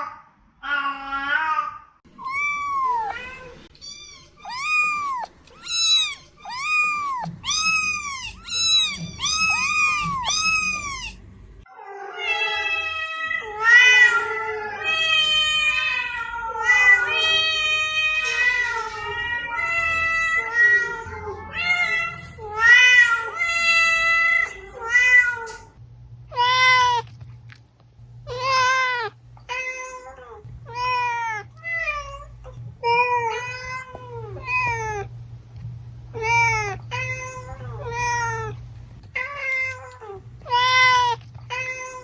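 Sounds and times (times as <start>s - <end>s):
cat meowing: 2.2s - 11.2s, 36.2s - 42.0s.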